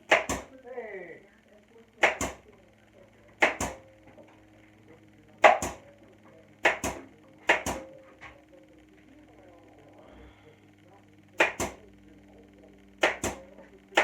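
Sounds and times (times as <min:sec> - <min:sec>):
sharp knocks in pairs: 0:00.0 - 0:00.5, 0:02.0 - 0:02.4, 0:03.4 - 0:03.8, 0:05.4 - 0:05.8, 0:06.6 - 0:07.9, 0:11.4 - 0:11.8, 0:13.0 - 0:14.0.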